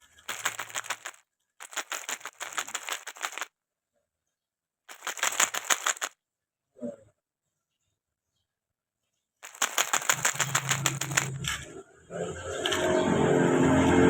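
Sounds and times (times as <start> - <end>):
rapid clicking rattle: 0.0 - 3.5, 4.9 - 6.1, 9.4 - 11.5.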